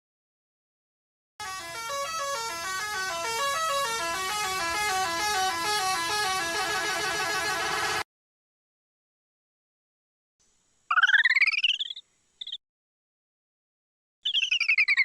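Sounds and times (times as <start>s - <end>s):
animated train horn: 1.4s - 8.0s.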